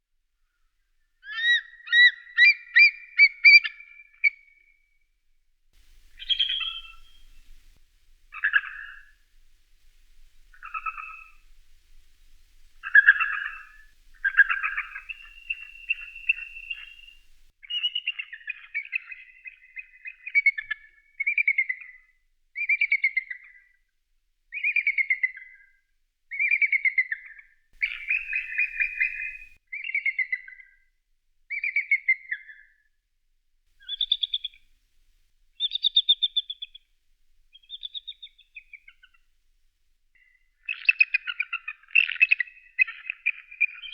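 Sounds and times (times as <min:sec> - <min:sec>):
eagle piping chirps: 0:05.8 - 0:17.5, 0:27.8 - 0:29.6, 0:33.8 - 0:34.6.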